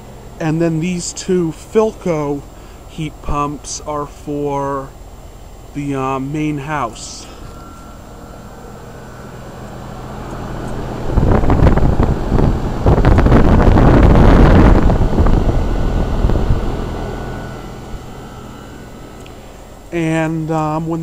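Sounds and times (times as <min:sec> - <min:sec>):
heat pump humming: 0:00.0 - 0:21.0
wind buffeting microphone: 0:09.5 - 0:18.1.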